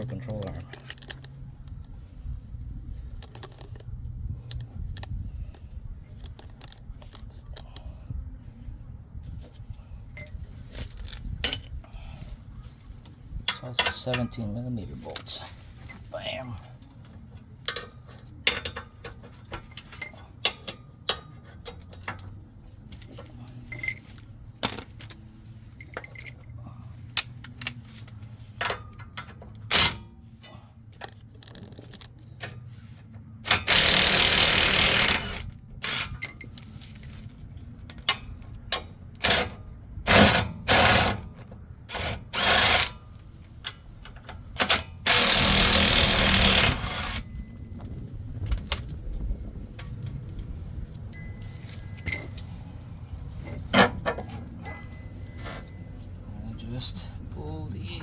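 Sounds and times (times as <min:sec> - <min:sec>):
metallic clicks of tools handled: 0:00.4 - 0:01.8, 0:13.0 - 0:14.4, 0:51.1 - 0:52.6
impact wrench bursts: 0:33.4 - 0:36.3, 0:40.1 - 0:41.2, 0:41.9 - 0:43.0, 0:44.6 - 0:47.2.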